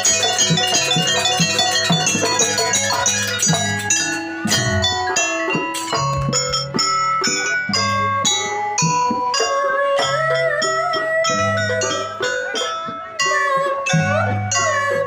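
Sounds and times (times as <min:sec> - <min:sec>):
metal keyed instruments ringing: 0:00.0 - 0:15.0
low drum hits: 0:04.5 - 0:05.2.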